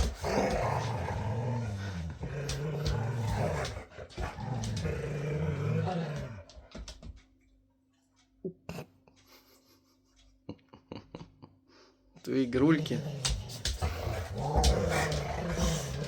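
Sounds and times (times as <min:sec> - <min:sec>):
dog growling: 0:00.0 - 0:06.8, 0:12.3 - 0:16.0.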